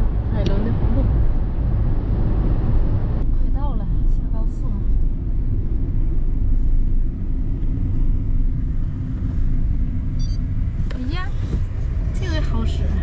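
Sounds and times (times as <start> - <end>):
engine and tyre rumble: 0.0 - 13.0
high electronic beep: 10.2 - 10.4.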